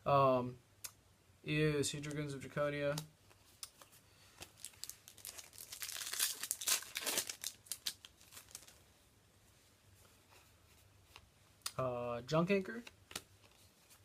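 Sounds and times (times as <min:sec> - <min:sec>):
foil wrapper crinkling and tearing: 0:04.5 - 0:08.8.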